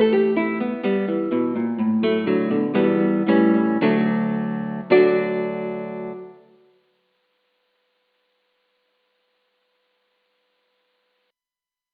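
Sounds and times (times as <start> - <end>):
faint steady tone: 6.1 - 11.3.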